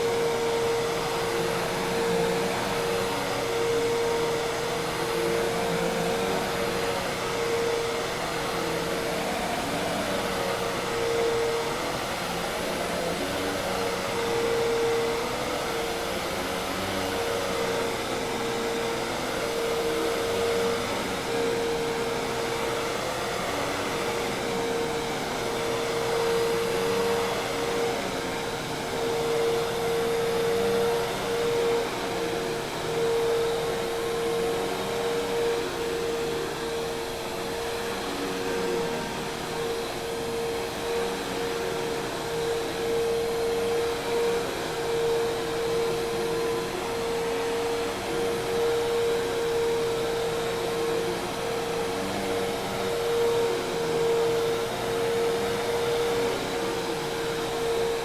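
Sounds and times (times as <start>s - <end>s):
vacuum cleaner running: 0.0s - 58.0s.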